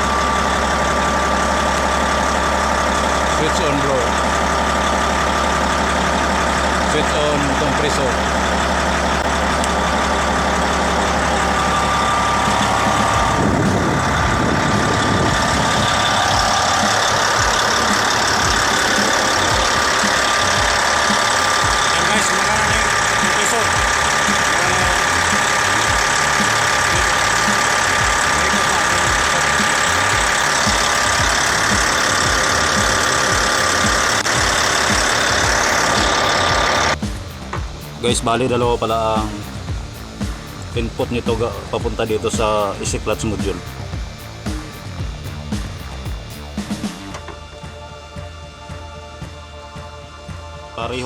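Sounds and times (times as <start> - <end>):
air-conditioning blower: 0.0 - 37.0
compressor pulsing: 0.0 - 51.0
diesel engine idling: 0.0 - 51.0
thin steady whine: 0.0 - 51.0
steady hiss: 9.2 - 47.2.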